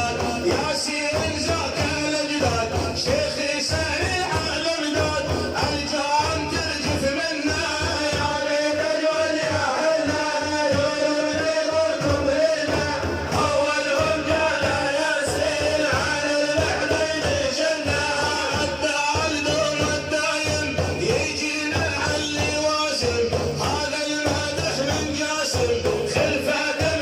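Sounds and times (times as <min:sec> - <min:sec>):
low drum beat: 0:00.0 - 0:27.0
man singing a religious chant: 0:00.0 - 0:27.0.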